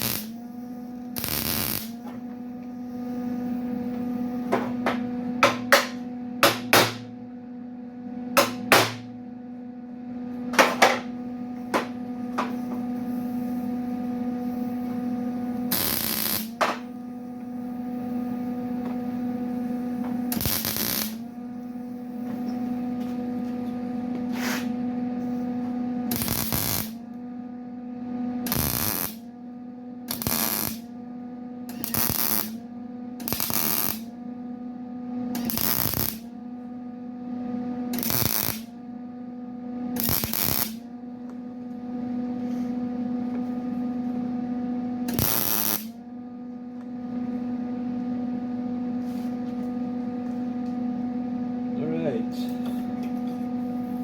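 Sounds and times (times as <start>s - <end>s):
hammer knocks on metal: 4.5s - 7.0s.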